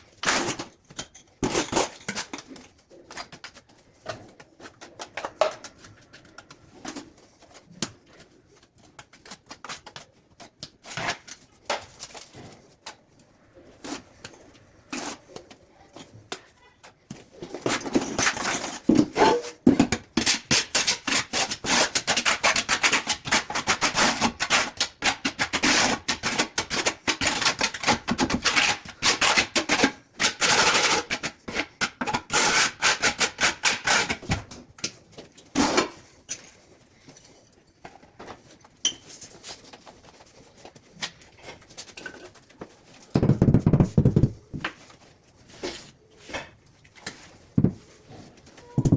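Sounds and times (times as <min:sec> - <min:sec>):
rapid scraping on tile: 0:17.3 - 0:34.4.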